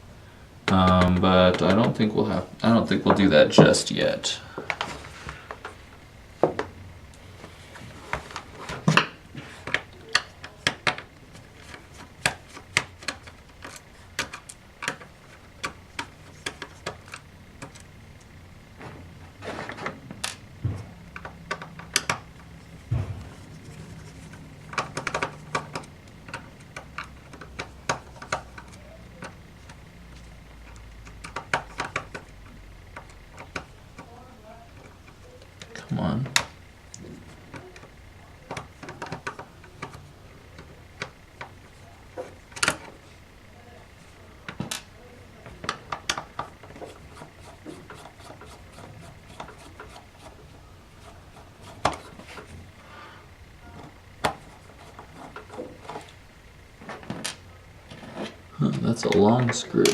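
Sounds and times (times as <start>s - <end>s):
screwdriver clicks and taps: 21.2s - 22.2s.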